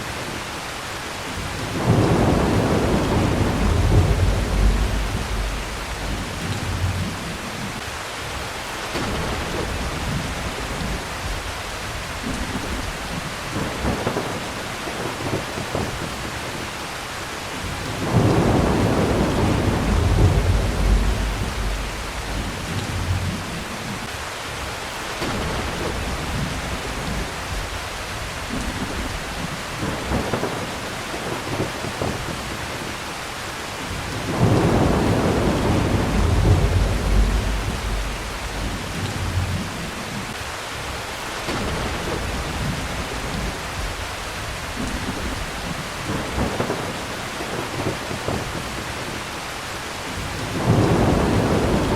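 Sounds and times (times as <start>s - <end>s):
heavy rain: 0.0s - 51.9s
thunder rolling: 1.4s - 7.8s, 17.6s - 24.1s, 33.9s - 40.4s, 50.2s - 51.9s.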